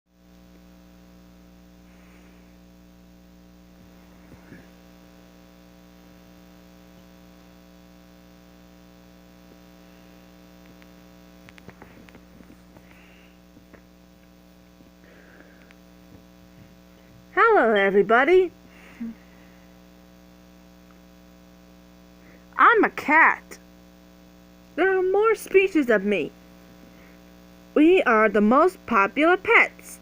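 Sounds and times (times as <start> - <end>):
electrical mains hum: 0.1 - 30.0
faint clicks and taps: 10.6 - 15.0.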